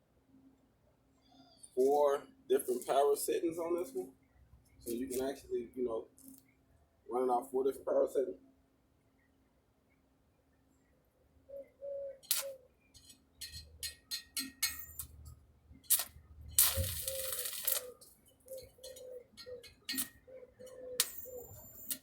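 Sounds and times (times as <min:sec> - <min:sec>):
pigeon cooing: 0:11.5 - 0:12.7, 0:16.6 - 0:22.0
loud crackling hiss: 0:15.9 - 0:18.0.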